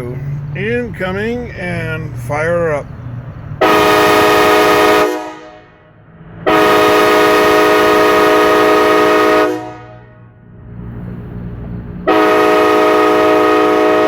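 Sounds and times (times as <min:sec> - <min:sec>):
train horn blasts: 0:03.6 - 0:10.4, 0:12.0 - 0:14.0.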